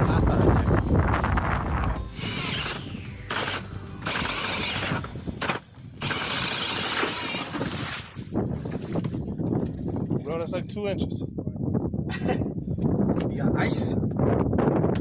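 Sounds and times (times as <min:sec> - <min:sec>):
ice auger grinding through ice: 0:02.2 - 0:08.2.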